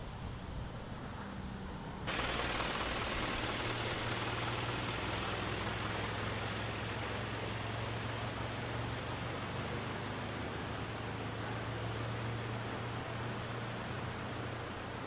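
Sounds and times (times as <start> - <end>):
engine humming: 2.1 - 10.0.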